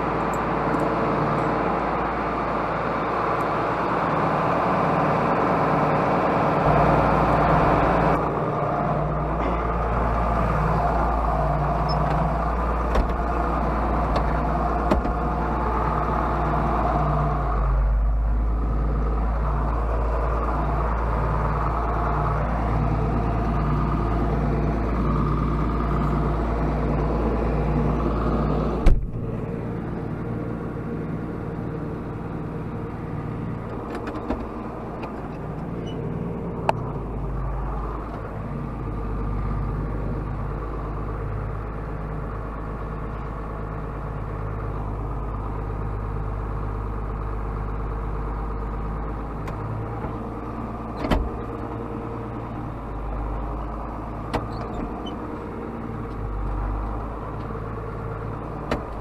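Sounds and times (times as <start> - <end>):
tractor diesel engine running: 0.0 - 59.0
sharp clunk: 28.8 - 29.3.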